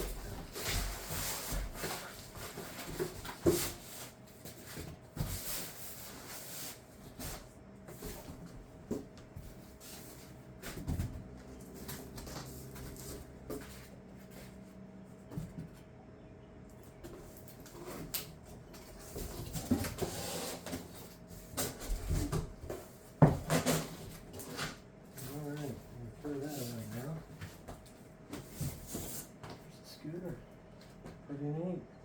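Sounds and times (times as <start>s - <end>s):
things being handled and put away: 17.0s - 31.2s.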